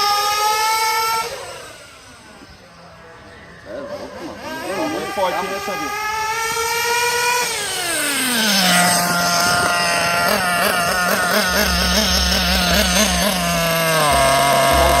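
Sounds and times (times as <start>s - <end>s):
toy car motor whining: 4.0s - 15.0s.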